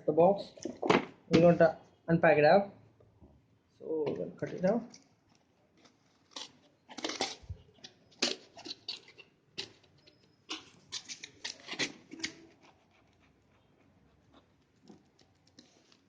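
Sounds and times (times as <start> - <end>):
knife cutting packaging: 5.8 - 13.2.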